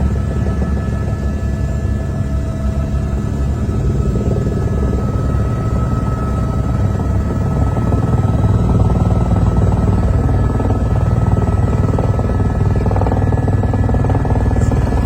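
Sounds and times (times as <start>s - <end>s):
faint whining tones: 0.0s - 15.0s
helicopter rotor and engine: 0.0s - 15.0s.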